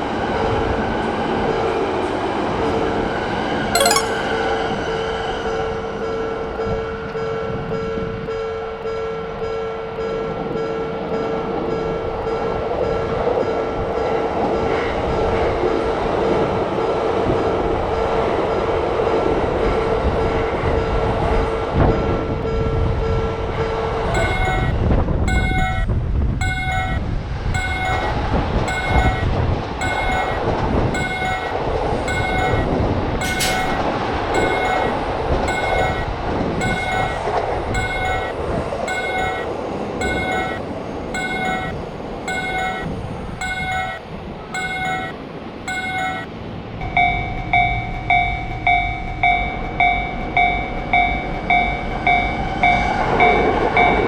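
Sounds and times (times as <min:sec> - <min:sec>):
crossing warning bell ringing: 0:22.0 - 0:54.0
electric train rumbling past: 0:45.2 - 0:54.0.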